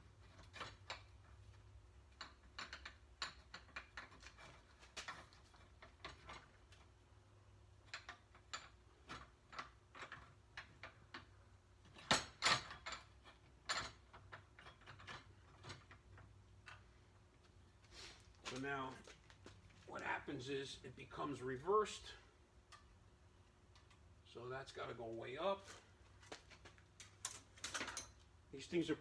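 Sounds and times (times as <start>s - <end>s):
metallic clicks and knocks: 0.2s - 6.9s, 27.0s - 28.2s.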